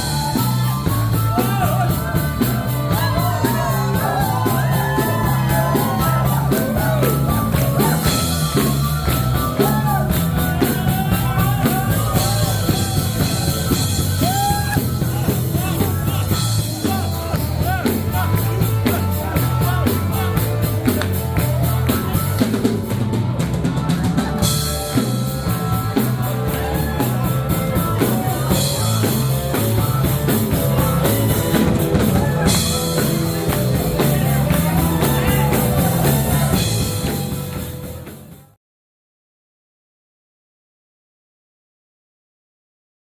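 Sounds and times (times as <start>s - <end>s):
rock music with drums and bass: 0.0s - 38.6s.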